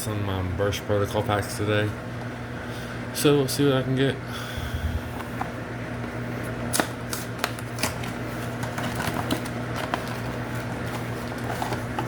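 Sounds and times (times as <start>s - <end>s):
steady low hum: 0.0s - 12.0s
plastic and foil crinkling: 6.8s - 12.0s.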